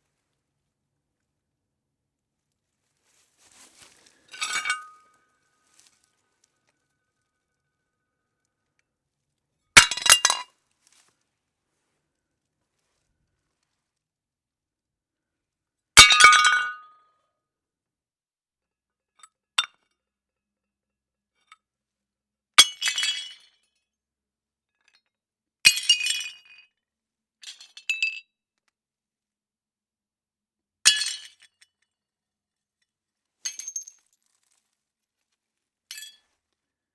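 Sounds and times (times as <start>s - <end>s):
jingle of broken shards: 4.4s - 5.0s.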